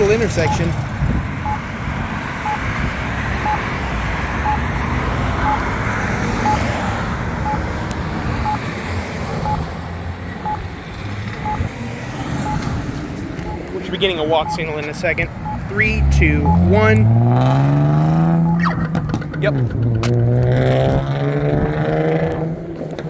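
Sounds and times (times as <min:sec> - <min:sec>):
crosswalk button beeps: 0:00.0 - 0:00.8, 0:02.4 - 0:02.6, 0:03.4 - 0:03.7, 0:04.4 - 0:04.7, 0:05.3 - 0:05.7, 0:06.4 - 0:06.8, 0:07.4 - 0:07.7, 0:08.4 - 0:08.7, 0:09.4 - 0:09.7, 0:10.4 - 0:10.6, 0:11.4 - 0:11.7, 0:12.4 - 0:12.7, 0:13.4 - 0:17.6, 0:18.4 - 0:20.1
traffic noise: 0:00.0 - 0:23.0.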